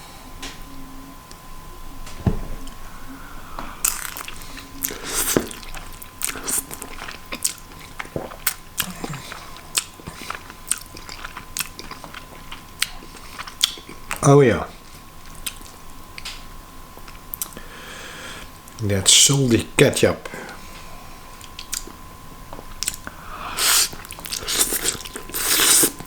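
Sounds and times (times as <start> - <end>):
person chewing noodles: 3.8 - 14.2, 17.0 - 17.6, 21.4 - 22.0, 22.6 - 26.0.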